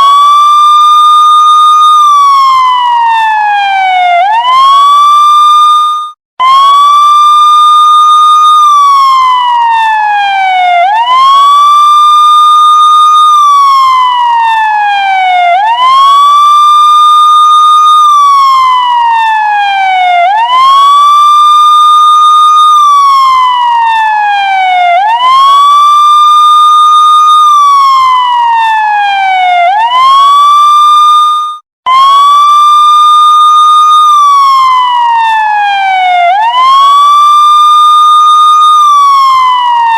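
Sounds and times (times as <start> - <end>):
police siren wailing: 0.0 - 39.9.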